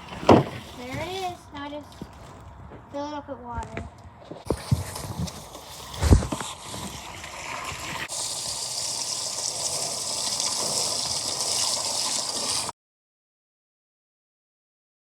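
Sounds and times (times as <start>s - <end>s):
thump: 0.2s - 1.1s
water splashing into pond basin: 5.6s - 12.7s.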